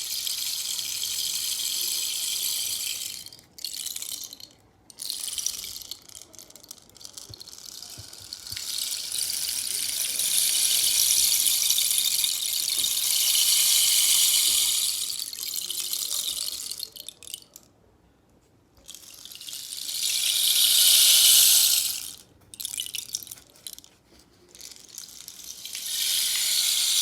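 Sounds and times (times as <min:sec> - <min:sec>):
rainstick pellets trickling: 0:00.0 - 0:17.6, 0:18.9 - 0:23.9, 0:24.6 - 0:27.0.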